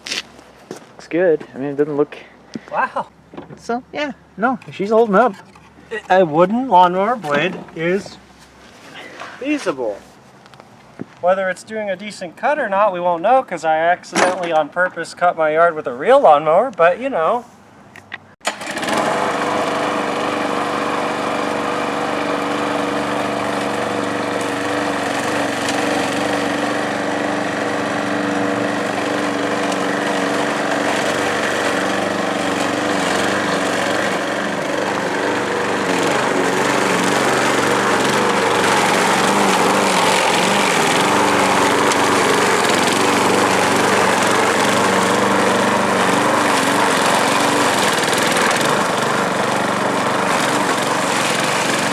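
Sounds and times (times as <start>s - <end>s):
lawn mower engine running: 18.4s - 51.9s.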